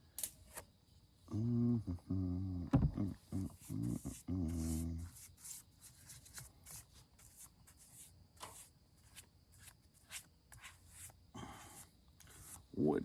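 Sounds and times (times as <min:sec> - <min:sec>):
hand rubbing wood: 0:03.3 - 0:11.2, 0:12.2 - 0:12.7.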